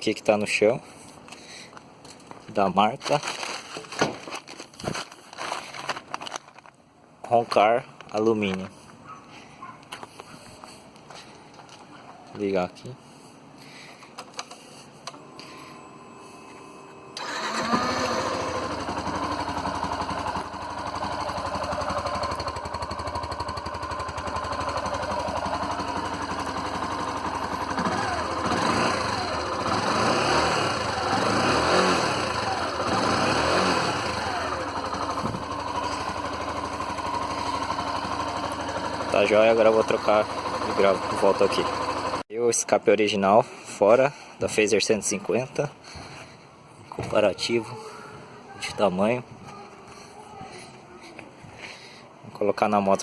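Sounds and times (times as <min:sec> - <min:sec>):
motorcycle engine idling and revving: 0:16.8 - 0:42.2.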